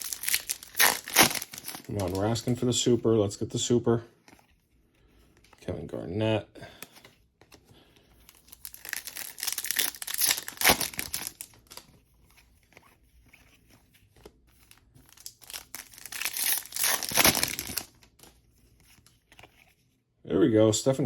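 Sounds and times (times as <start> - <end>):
card pack wrapper tearing and crinkling: 0.0 - 2.6, 8.2 - 12.8, 14.6 - 18.4.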